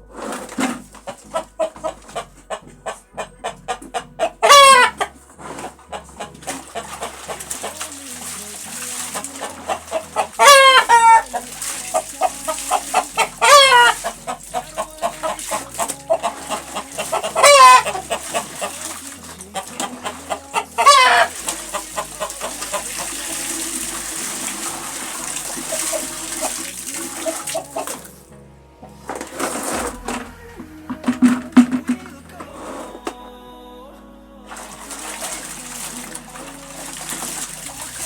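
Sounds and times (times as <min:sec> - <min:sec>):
chickens clucking: 0:00.0 - 0:28.2
background music with bass line: 0:00.0 - 0:38.0
chickens crowing: 0:00.7 - 0:08.2, 0:09.1 - 0:28.0.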